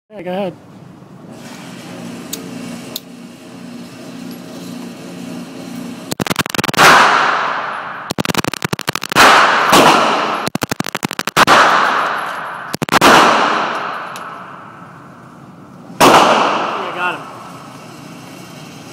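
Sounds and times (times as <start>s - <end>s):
rapid gunfire with echo: 6.1s - 14.6s, 16.0s - 17.2s
low steady hum: 11.5s - 18.4s.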